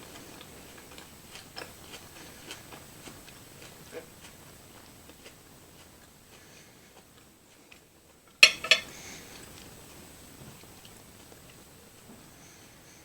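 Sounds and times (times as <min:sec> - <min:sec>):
cutlery clinking against a plate: 0:08.4 - 0:09.0.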